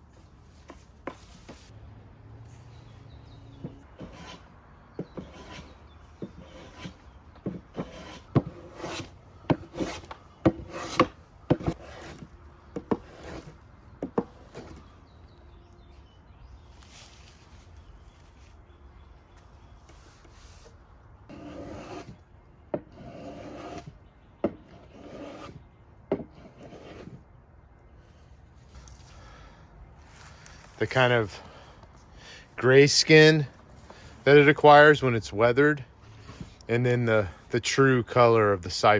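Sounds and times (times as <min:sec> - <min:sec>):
hand tool scraping wood: 0:03.5 - 0:15.0, 0:20.1 - 0:22.2, 0:22.9 - 0:24.0, 0:24.6 - 0:25.6, 0:26.2 - 0:27.2.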